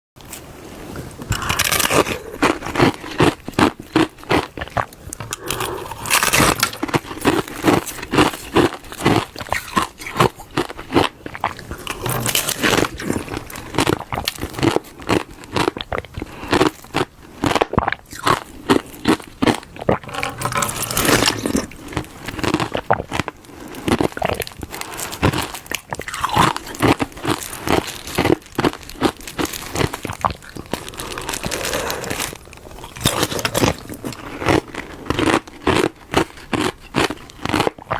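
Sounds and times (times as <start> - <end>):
ice being chewed with crunches: 0.2 - 37.9.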